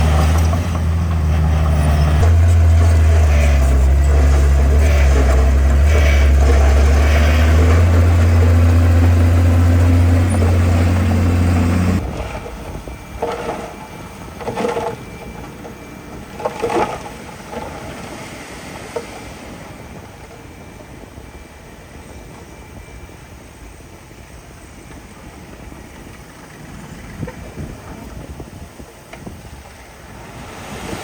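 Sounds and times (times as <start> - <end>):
diesel machine engine drone: 0.0 - 30.9.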